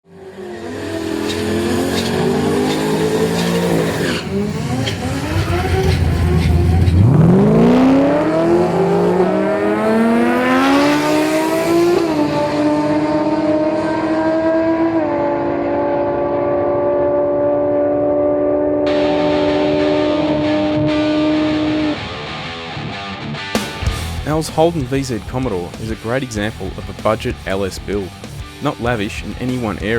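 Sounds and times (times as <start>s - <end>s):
car engine accelerating hard: 0.1s - 22.1s.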